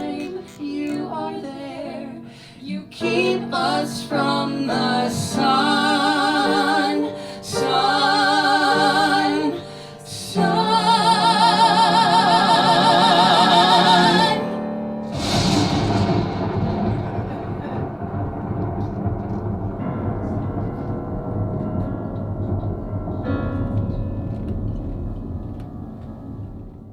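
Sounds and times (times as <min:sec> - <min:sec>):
person singing with vibrato: 0:00.0 - 0:15.3.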